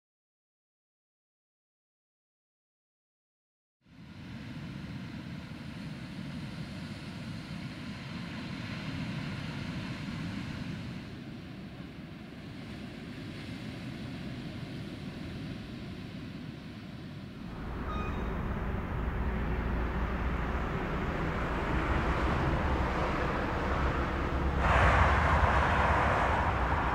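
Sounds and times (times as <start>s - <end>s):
excavator diesel engine running: 17.5s - 26.9s.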